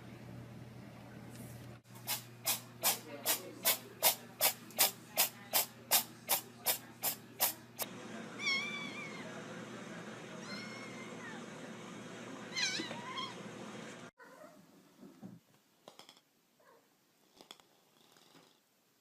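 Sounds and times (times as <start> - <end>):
cat meow: 8.4 - 9.3, 10.4 - 11.4, 12.5 - 13.4.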